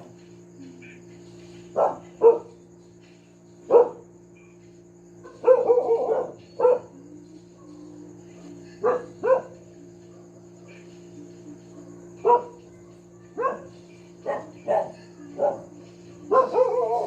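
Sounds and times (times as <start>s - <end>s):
low hum: 0.0s - 17.0s
dog barking: 1.8s - 2.6s, 3.7s - 4.0s, 5.2s - 7.0s, 8.8s - 10.8s, 12.2s - 12.6s, 13.4s - 17.0s.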